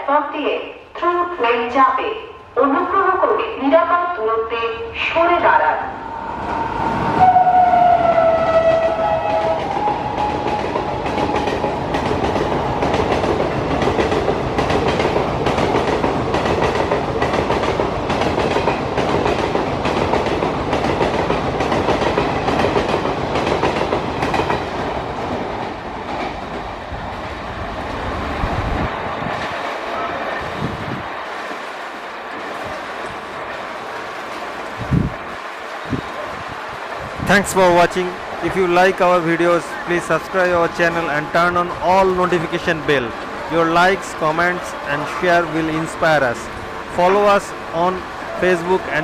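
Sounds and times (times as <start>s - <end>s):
train coaches rattling past: 5.0s - 49.0s
locomotive horn: 6.0s - 11.9s.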